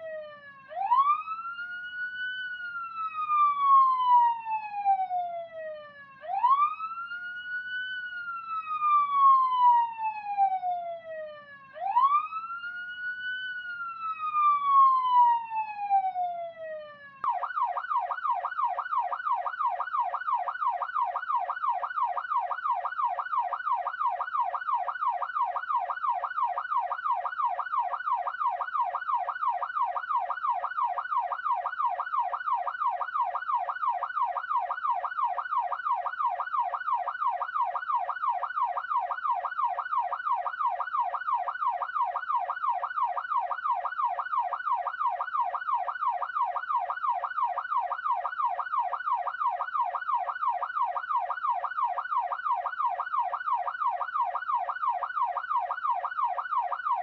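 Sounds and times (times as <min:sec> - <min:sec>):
police siren yelping: 0:00.0 - 0:57.0.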